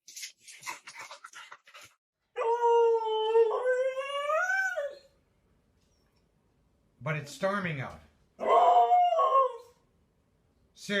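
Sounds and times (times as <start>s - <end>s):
dog howling: 2.4s - 5.1s, 8.4s - 9.8s.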